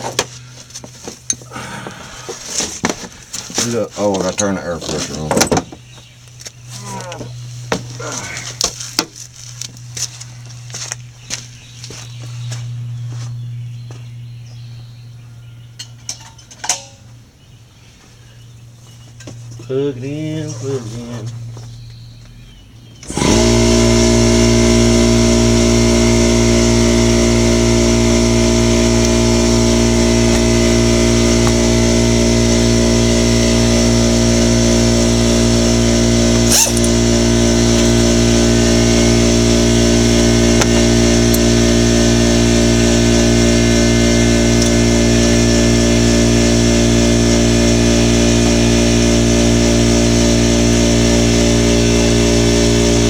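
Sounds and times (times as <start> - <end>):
air compressor motor drone: 0.0 - 53.0.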